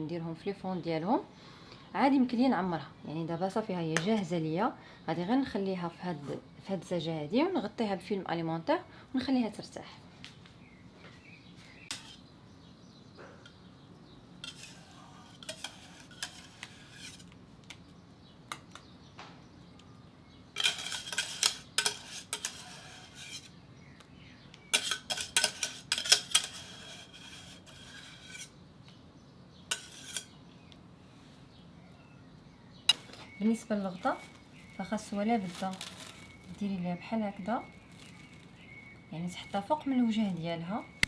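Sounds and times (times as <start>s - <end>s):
utensil scraping and clinking on pot: 11.8s - 12.3s, 14.4s - 17.4s, 20.6s - 23.6s, 24.6s - 28.6s, 29.7s - 30.4s, 32.9s - 41.0s.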